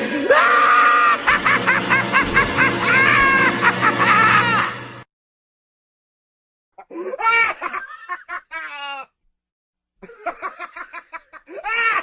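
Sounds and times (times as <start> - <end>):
person laughing hysterically: 0.0 - 4.8, 6.8 - 9.1, 10.0 - 12.0.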